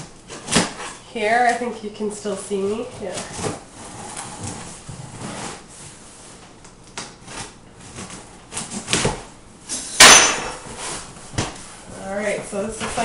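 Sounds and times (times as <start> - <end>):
cardboard box scraping: 3.0 - 6.3.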